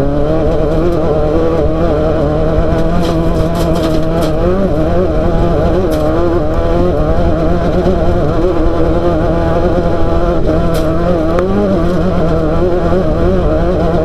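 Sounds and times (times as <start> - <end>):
race car engine running hard: 0.0 - 14.0
car rattles and knocks: 0.1 - 14.0.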